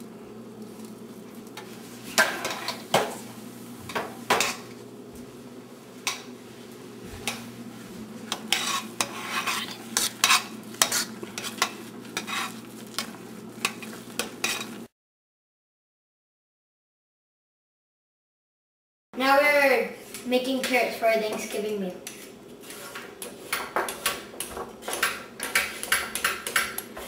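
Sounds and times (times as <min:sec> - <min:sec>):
steady low hum: 0:00.0 - 0:14.9
spoon scraping a pot: 0:02.1 - 0:02.8, 0:08.3 - 0:14.8, 0:22.0 - 0:27.0.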